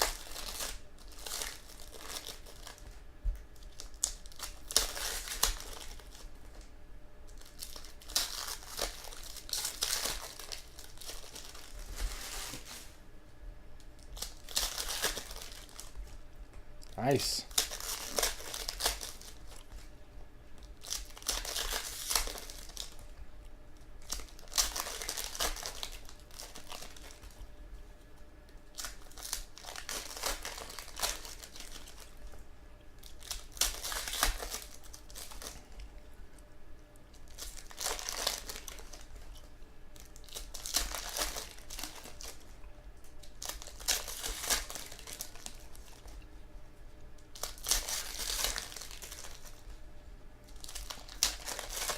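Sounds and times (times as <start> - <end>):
foil wrappers crinkling and tearing: 0.0 - 6.7, 7.3 - 13.0, 13.8 - 16.2, 17.1 - 19.9, 20.6 - 23.2, 24.0 - 27.5, 28.6 - 32.4, 33.0 - 35.9, 37.1 - 46.2, 47.2 - 49.8, 50.5 - 51.9.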